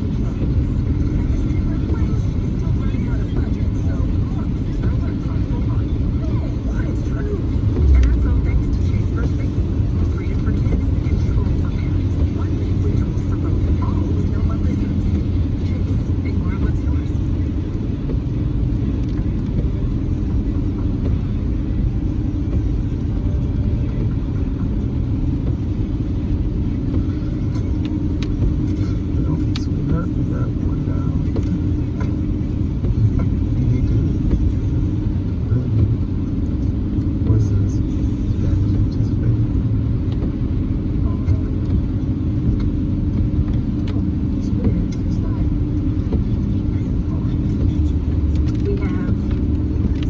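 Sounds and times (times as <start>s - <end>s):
car driving in rain: 0.0s - 50.0s.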